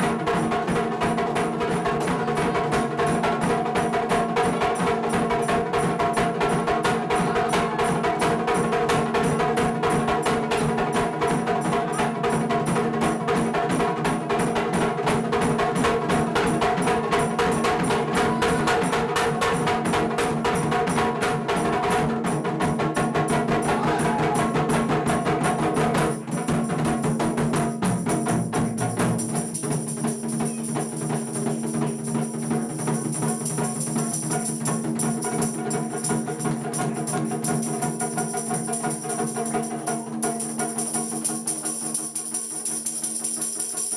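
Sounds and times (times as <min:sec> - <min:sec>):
drum ensemble playing fast rhythm: 0:00.0 - 0:43.9.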